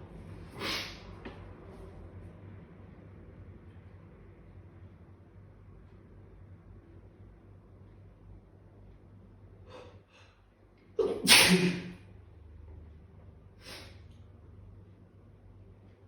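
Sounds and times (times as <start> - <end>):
person sneezing: 0.6 - 1.0, 11.0 - 12.0
short sharp breath: 0.6 - 1.0, 13.6 - 14.0.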